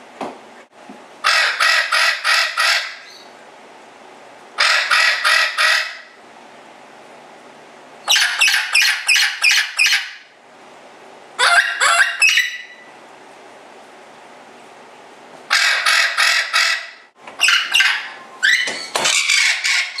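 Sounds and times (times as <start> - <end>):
harsh rapid bird calls: 1.3 - 3.4, 8.0 - 10.2, 11.4 - 12.9, 15.5 - 20.0.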